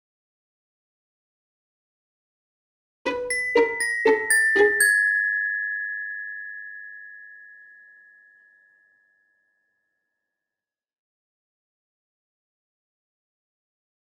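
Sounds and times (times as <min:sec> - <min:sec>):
glockenspiel notes: 0:03.1 - 0:09.3.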